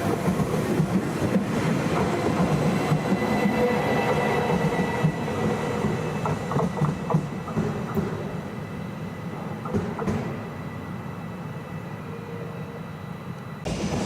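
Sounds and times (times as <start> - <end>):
train wheels rumbling on rails: 0.0 - 8.6, 9.3 - 10.6, 13.6 - 14.0.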